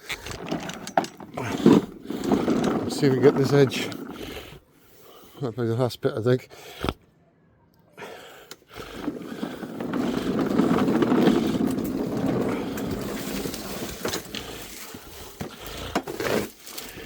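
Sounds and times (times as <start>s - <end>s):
lawnmower cutting grass: 1.4s - 4.4s, 8.9s - 16.9s.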